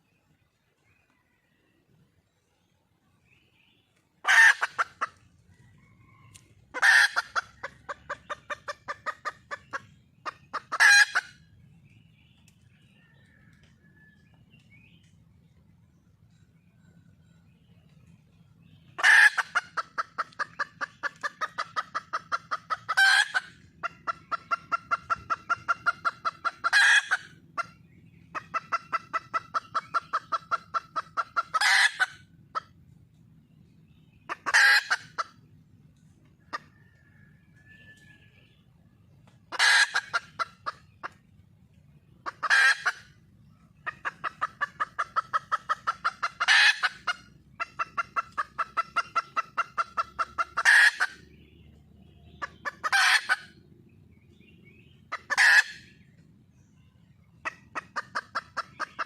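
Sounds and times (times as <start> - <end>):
hen clucking: 4.2 - 59.0.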